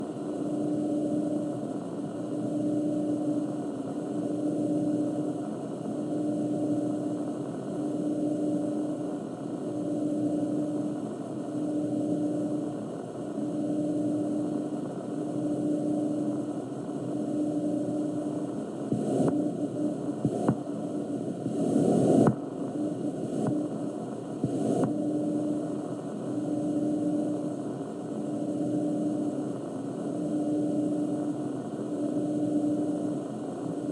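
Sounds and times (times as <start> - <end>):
radio receiver static: 18.9 - 27.5.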